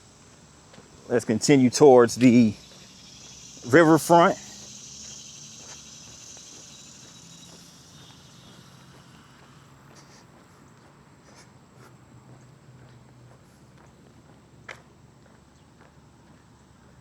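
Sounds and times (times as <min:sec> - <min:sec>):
insects chirring: 0:00.0 - 0:13.1.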